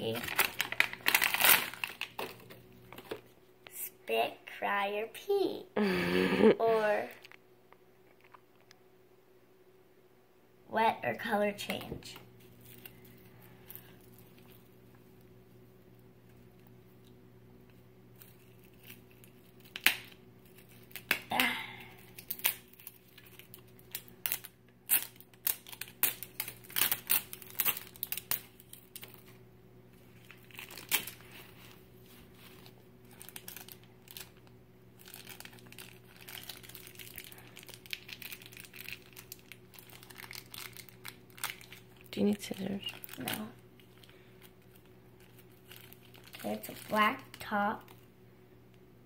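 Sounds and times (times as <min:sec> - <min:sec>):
plastic wrapping crinkling and tearing: 0:00.0 - 0:03.3, 0:12.4 - 0:14.8, 0:17.7 - 0:48.1.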